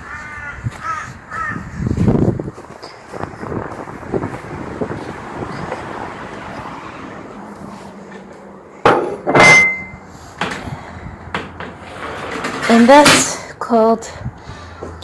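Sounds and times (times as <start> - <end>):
wind on microphone: 0.0 - 8.0
door banging: 8.9 - 13.5.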